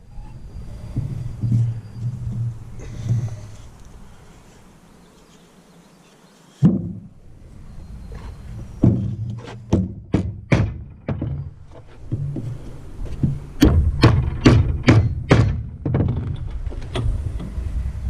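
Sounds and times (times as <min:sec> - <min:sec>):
hammer knocking on metal parts: 0:08.8 - 0:11.5, 0:13.6 - 0:16.4.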